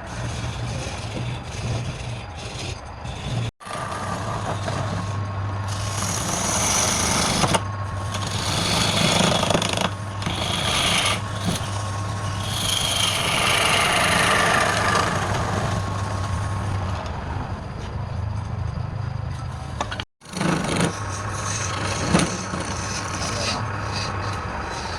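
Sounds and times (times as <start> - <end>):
turning tool scraping wood: 0.0 - 16.5, 19.6 - 24.9
lathe motor hum: 0.0 - 16.6.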